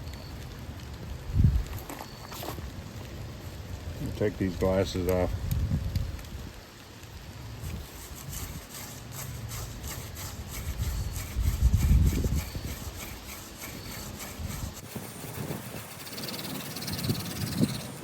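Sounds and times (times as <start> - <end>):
hand drill grinding wood on wood: 7.6 - 18.0.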